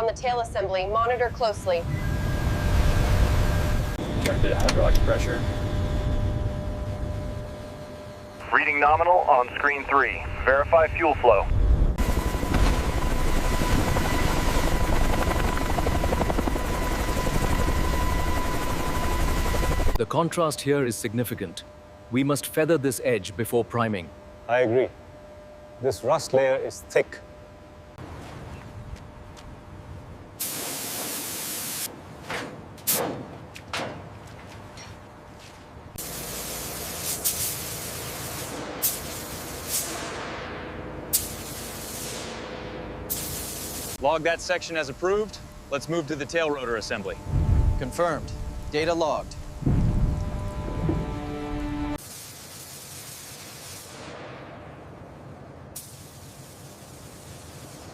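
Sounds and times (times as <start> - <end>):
high whine: 0.0 - 30.4, 35.9 - 52.1
helicopter rotor fluttering: 11.8 - 20.0
compressed air hissing: 41.1 - 42.4, 43.1 - 44.0.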